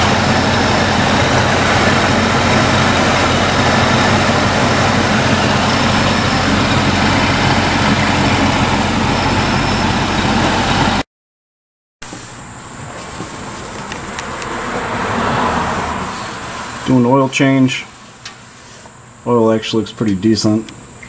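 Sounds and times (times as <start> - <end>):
car engine running steadily: 0.0 - 11.0.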